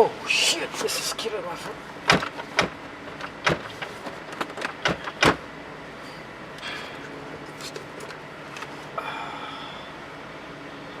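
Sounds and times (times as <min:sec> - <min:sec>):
sharp clicks and knocks: 0:02.0 - 0:05.4.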